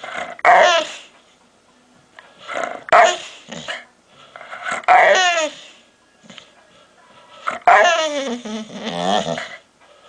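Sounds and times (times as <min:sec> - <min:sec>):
dog growl-like vocalizing: 0:07.5 - 0:09.6.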